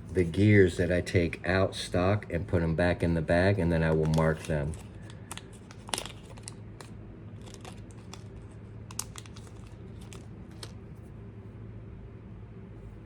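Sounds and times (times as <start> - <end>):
faint steady hum: 0.0 - 13.0
plastic bag crinkling: 3.8 - 10.8.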